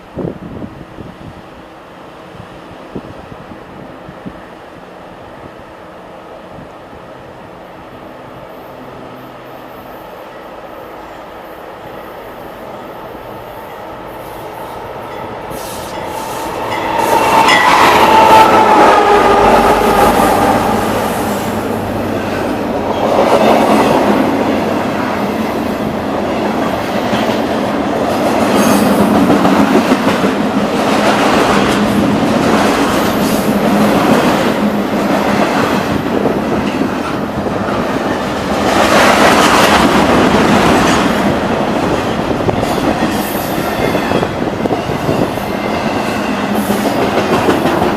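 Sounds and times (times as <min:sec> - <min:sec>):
train whine: 0:00.0 - 0:47.9
train wheels clattering on rails: 0:22.2 - 0:47.9.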